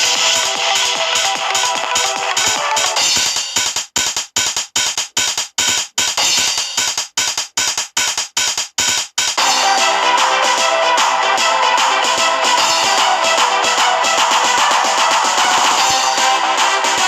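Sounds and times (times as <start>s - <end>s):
electronic dance music: 0.0s - 4.2s, 9.0s - 17.0s.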